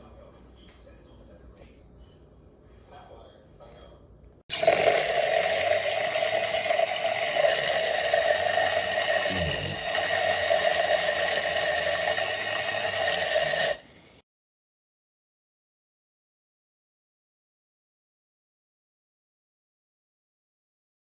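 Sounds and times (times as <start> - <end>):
milk frother motor whirring: 4.5 - 14.2.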